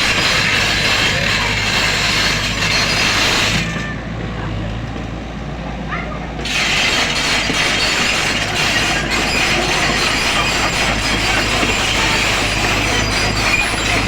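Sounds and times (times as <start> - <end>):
metallic scraping and clanking: 0.0 - 4.0, 6.4 - 14.0
excavator diesel engine running: 0.0 - 14.0.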